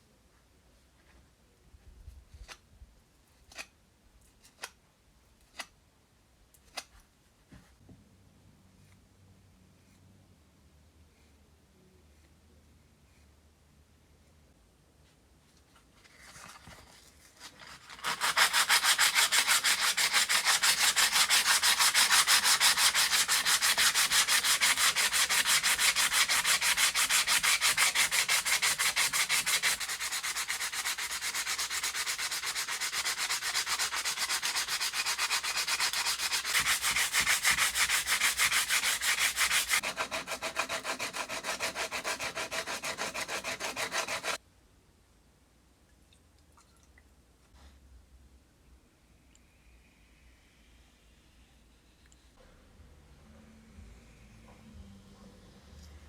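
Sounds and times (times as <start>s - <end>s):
hand sanding with sandpaper: 17.4s - 44.4s.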